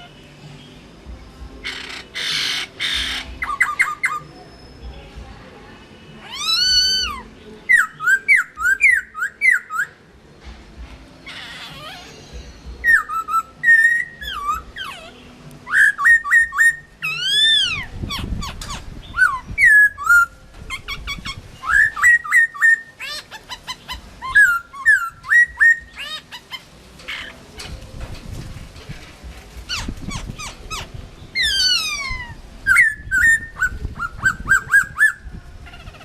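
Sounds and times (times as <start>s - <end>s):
bird singing whistled phrases: 1.7s - 4.9s, 6.2s - 10.0s, 12.1s - 26.3s, 29.7s - 35.3s.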